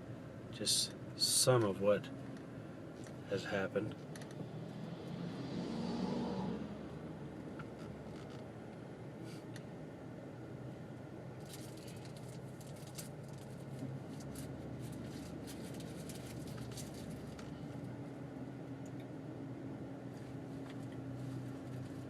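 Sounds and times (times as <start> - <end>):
car engine hum: 0.0 - 22.0
road noise: 0.0 - 22.0
faint clicks and rattles: 11.4 - 17.6.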